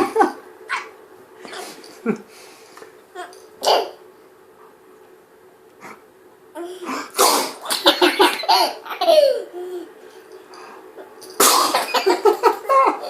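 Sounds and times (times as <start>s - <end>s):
man pretend sneezing: 6.8s - 7.7s
toddler laughing: 7.8s - 9.9s.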